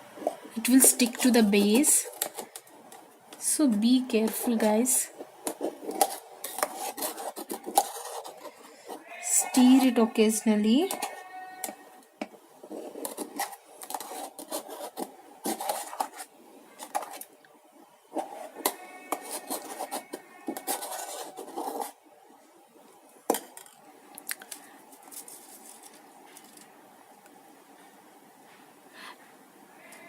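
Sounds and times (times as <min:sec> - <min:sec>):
utensil scraping inside kettle: 0:03.6 - 0:11.9, 0:12.6 - 0:17.2, 0:18.1 - 0:22.0.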